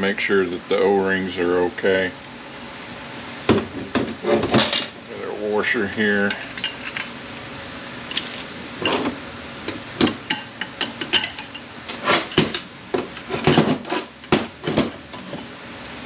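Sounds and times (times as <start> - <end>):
metal parts clinking and knocking: 8.1 - 9.0.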